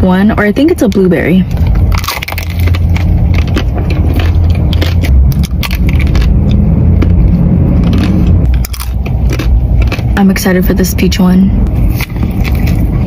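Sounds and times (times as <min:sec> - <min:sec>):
steady low rumble: 0:00.0 - 0:13.0
chewing soft food: 0:01.6 - 0:10.3, 0:11.6 - 0:13.0.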